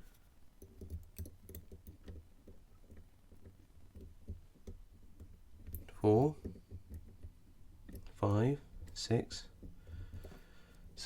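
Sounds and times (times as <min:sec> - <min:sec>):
lock pick clicking and tapping: 0:00.6 - 0:08.2.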